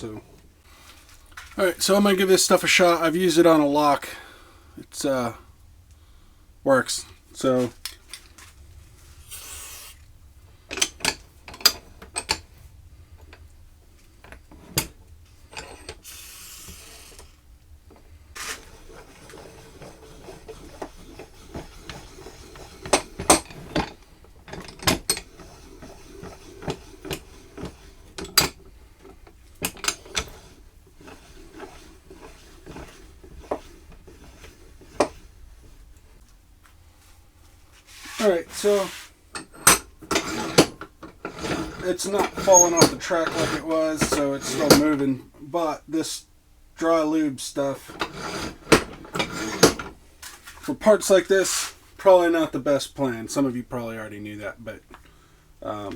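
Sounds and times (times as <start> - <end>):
metal vise clicking and rubbing: 10.7 - 12.5, 14.2 - 17.4, 18.4 - 35.9, 37.9 - 45.1, 47.6 - 50.7.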